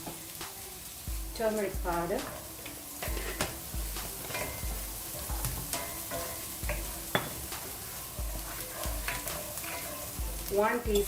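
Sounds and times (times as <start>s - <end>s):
onions sizzling in hot oil: 0.0s - 11.0s
spatula knocking against pan: 3.0s - 11.0s.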